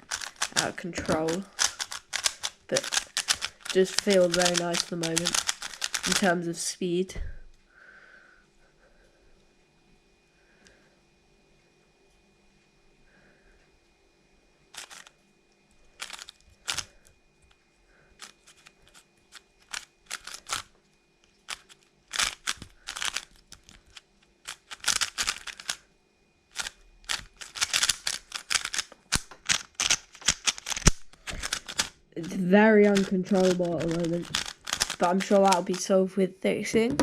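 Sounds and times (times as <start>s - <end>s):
speed cube plastic clicks: 0.0s - 6.4s, 14.8s - 15.1s, 16.0s - 17.0s, 18.2s - 20.7s, 21.4s - 25.8s, 26.5s - 35.8s.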